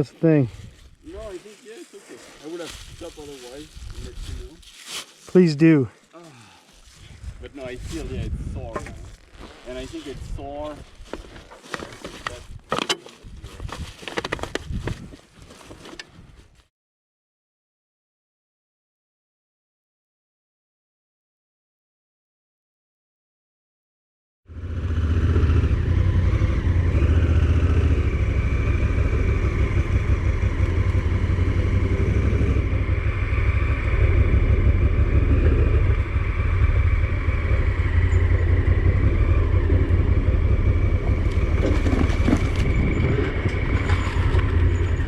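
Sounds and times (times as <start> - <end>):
vehicle engine running: 24.5 - 45.0
knocks and rattles: 41.3 - 45.0.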